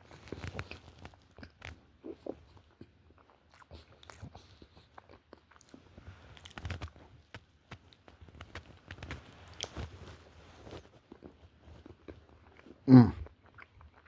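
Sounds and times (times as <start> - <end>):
crunchy chewing: 0.0 - 14.0
mouth sounds: 12.8 - 13.3.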